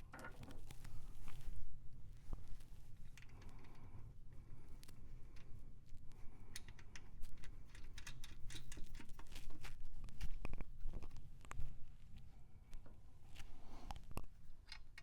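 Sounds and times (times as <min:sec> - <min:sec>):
small metal hardware clicking: 0:06.4 - 0:09.6, 0:14.5 - 0:15.0.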